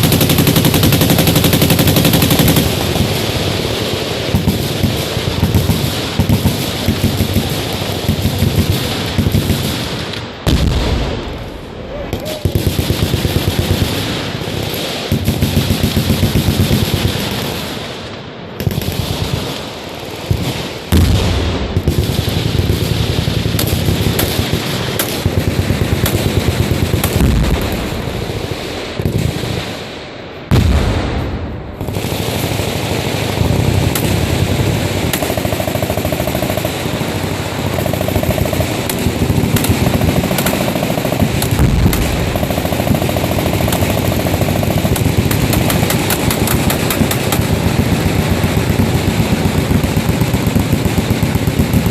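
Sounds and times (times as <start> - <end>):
machine guns firing full-auto: 0.0 - 51.9
loud single blast: 10.5 - 12.5, 30.5 - 31.9.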